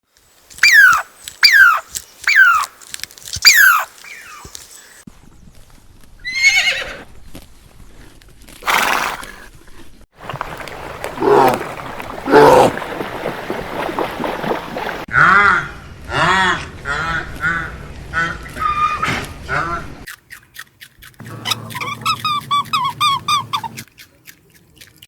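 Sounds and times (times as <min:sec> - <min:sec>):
horse whinnying: 0:06.2 - 0:07.1, 0:08.6 - 0:09.4
horse snorting: 0:08.6 - 0:09.6, 0:10.2 - 0:13.4.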